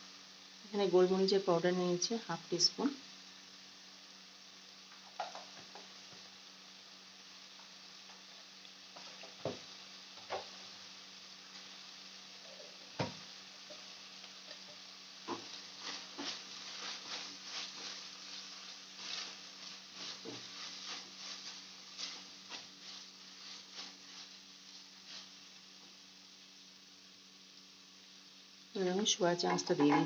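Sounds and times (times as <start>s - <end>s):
vegetables sizzling in a pan: 0.0s - 30.0s
spatula scraping a pan: 14.5s - 25.4s.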